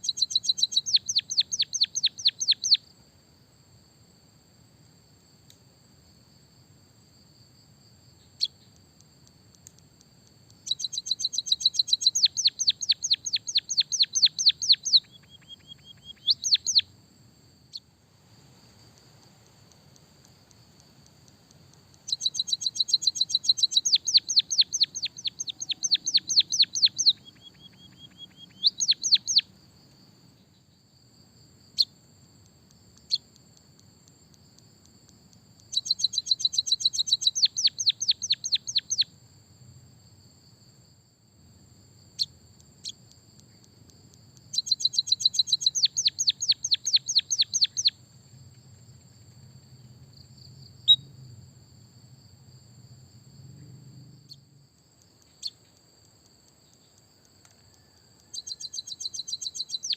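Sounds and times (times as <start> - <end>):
bird singing rapid chirps: 0.0 - 2.8, 10.6 - 16.9, 21.9 - 29.5, 35.6 - 39.1, 44.4 - 48.0, 57.8 - 59.9.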